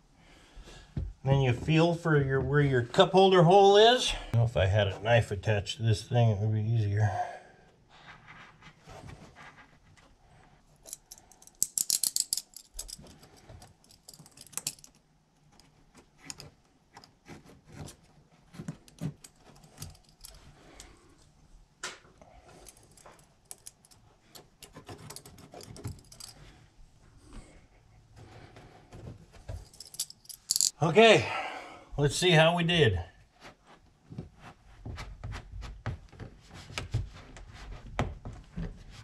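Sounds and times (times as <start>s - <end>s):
hands scratching and cutting carpet: 7.9s - 10.2s, 15.5s - 20.6s, 33.3s - 39.0s.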